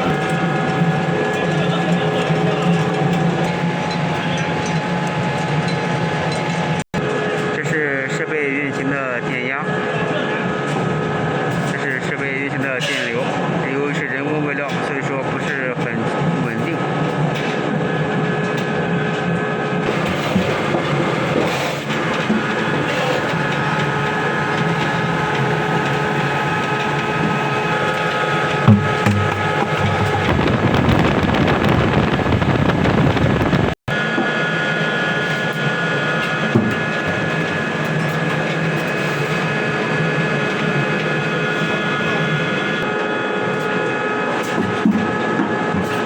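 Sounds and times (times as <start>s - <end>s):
pellet mill running with whining tones: 0.0s - 7.4s, 19.8s - 46.0s
short knocks: 28.7s - 30.7s.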